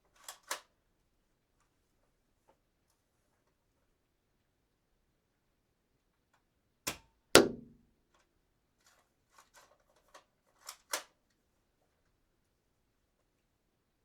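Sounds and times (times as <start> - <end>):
dart gun shot: 6.9 - 7.8.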